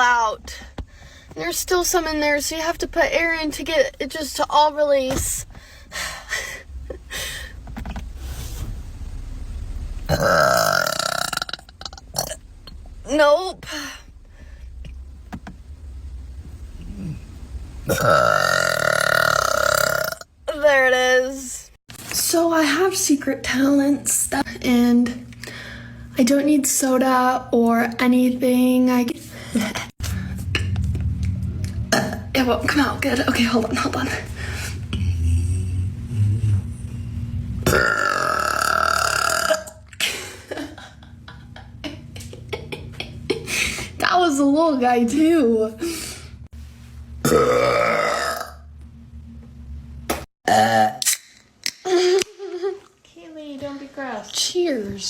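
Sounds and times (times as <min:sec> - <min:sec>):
girl burping: 0:10.1 - 0:12.4, 0:17.9 - 0:20.3, 0:31.9 - 0:32.2, 0:37.7 - 0:39.8, 0:47.2 - 0:48.6, 0:50.5 - 0:51.1.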